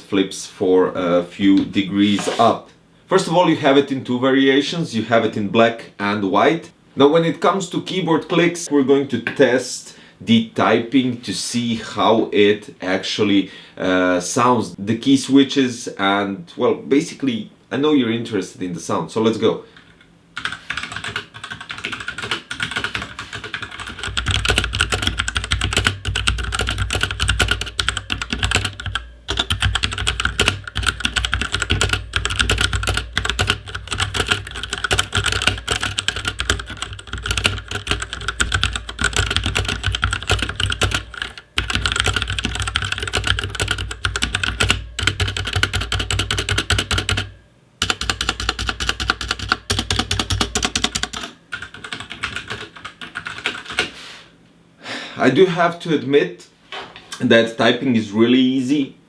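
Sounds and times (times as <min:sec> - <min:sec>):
mechanical keyboard typing: 0:19.8 - 0:53.9.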